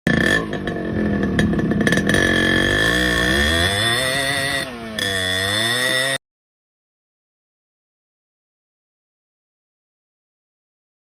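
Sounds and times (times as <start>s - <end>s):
high-pitched whine: 0.1s - 5.2s
motorcycle engine revving: 0.1s - 6.2s.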